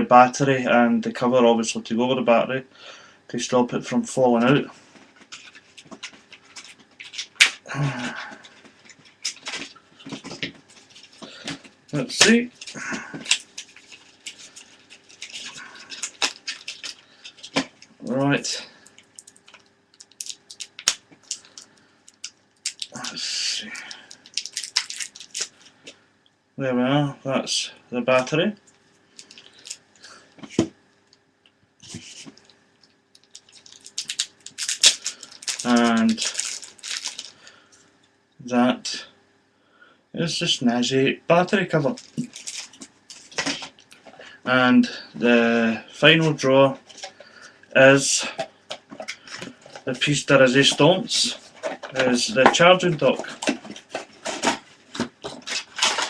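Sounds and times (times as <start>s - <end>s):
cardboard packaging rustling: 4.4s - 25.7s, 29.2s - 29.8s, 31.8s - 32.4s, 33.2s - 37.4s, 41.7s - 44.2s, 48.4s - 56.0s.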